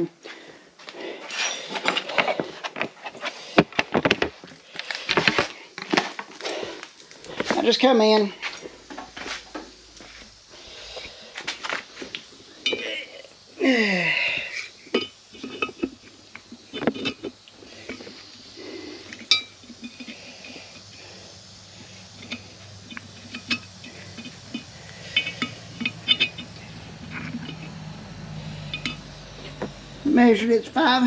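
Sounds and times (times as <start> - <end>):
metal tools clinking on workbench: 1.3 - 2.4.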